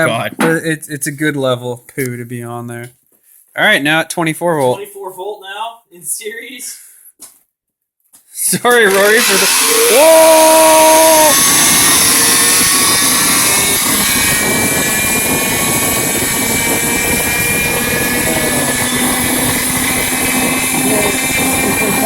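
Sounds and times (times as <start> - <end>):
electric starter motor whine: 8.8 - 22.0.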